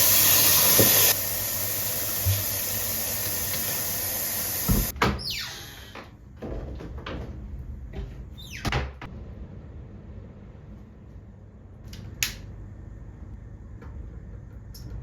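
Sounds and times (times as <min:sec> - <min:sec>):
steady hiss: 0:00.0 - 0:04.9.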